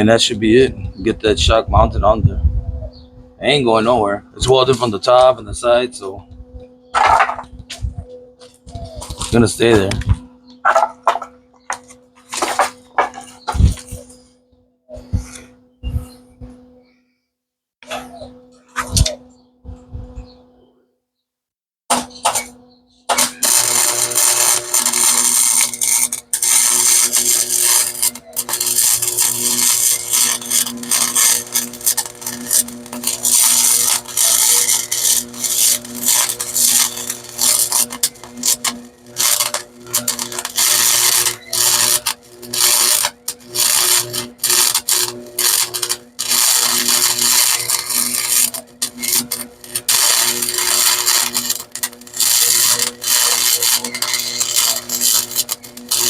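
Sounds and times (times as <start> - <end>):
steady low hum: 0.0 - 17.0, 17.8 - 20.8, 21.9 - 56.0
welding arc crackling: 7.0 - 14.2, 21.9 - 56.0.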